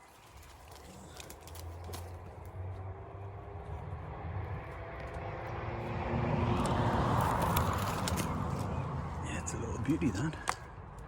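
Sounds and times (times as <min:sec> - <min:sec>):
brush snapping and rustling: 0:00.0 - 0:02.6, 0:06.6 - 0:08.8.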